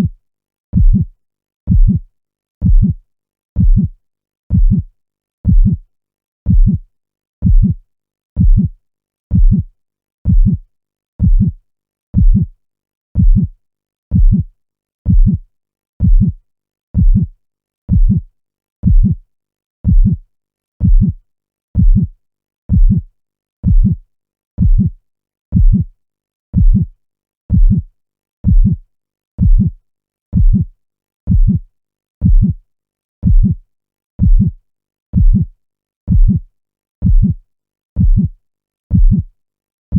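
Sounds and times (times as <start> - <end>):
heartbeat double thump: 0.8 - 1.1, 1.7 - 2.0, 2.6 - 3.0, 3.6 - 3.9, 4.5 - 4.9, 5.5 - 5.8, 6.5 - 6.8, 7.4 - 7.8, 8.4 - 8.7, 9.3 - 9.7, 10.3 - 10.6, 11.2 - 11.6, 12.2 - 12.5, 13.2 - 13.5, 14.1 - 14.5, 15.1 - 15.4, 16.0 - 16.4, 17.0 - 17.3, 17.9 - 18.2, 18.8 - 19.2, 19.9 - 20.2, 20.8 - 21.2, 21.8 - 22.1, 22.7 - 23.0, 23.6 - 24.0, 24.6 - 24.9, 25.6 - 25.9, 26.6 - 26.9, 27.5 - 27.8, 28.4 - 28.8, 29.4 - 29.7, 30.4 - 30.7, 31.3 - 31.6, 32.2 - 32.6, 33.2 - 33.6, 34.2 - 34.6, 35.2 - 35.4, 36.1 - 36.4, 37.0 - 37.4, 38.0 - 38.3, 38.9 - 39.2.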